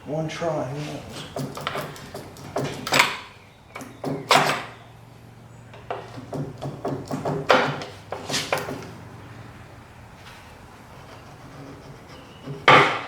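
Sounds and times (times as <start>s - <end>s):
hand tools knocking on metal: 1.0s - 4.8s, 5.7s - 9.2s, 12.4s - 13.0s.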